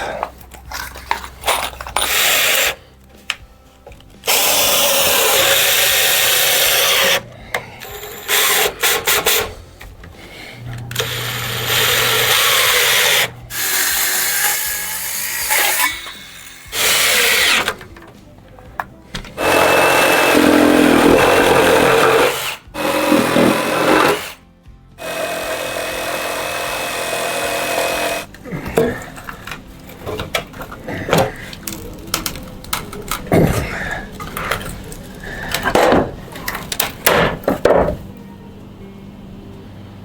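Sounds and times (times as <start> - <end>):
power drill driving screws: 1.9 - 2.8, 4.2 - 9.5, 10.9 - 17.8, 19.4 - 24.4, 25.0 - 28.3
knocks and thuds of wood: 35.6 - 36.2, 36.9 - 38.1.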